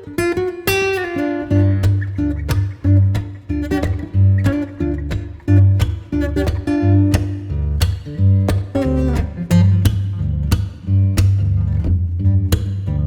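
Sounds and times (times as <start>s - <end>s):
acoustic guitar strumming: 0.0s - 13.0s
steady bass line: 1.5s - 13.0s.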